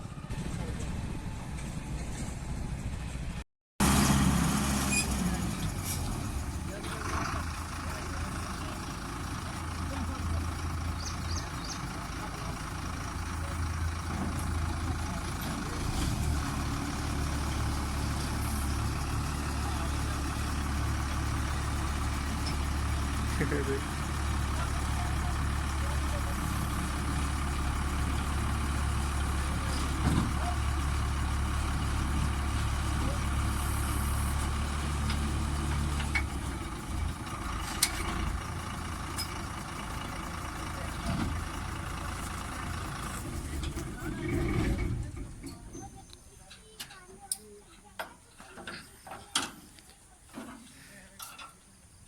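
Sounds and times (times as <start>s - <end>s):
combine harvester engine: 0.0s - 51.5s.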